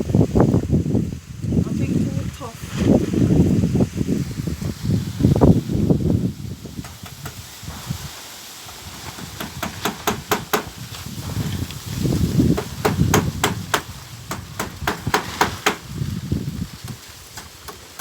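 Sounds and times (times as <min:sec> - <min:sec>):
low rustling noise: 0:00.2 - 0:09.4, 0:10.8 - 0:12.5
hammer driving nails into wood: 0:09.2 - 0:10.8, 0:12.5 - 0:15.8.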